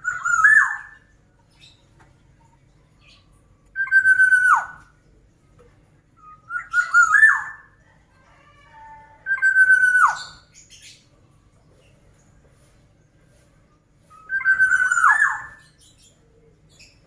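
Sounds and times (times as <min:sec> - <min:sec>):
oriole whistling song: 0:00.0 - 0:01.0, 0:03.7 - 0:04.9, 0:06.2 - 0:07.7, 0:09.2 - 0:10.5, 0:14.0 - 0:15.8.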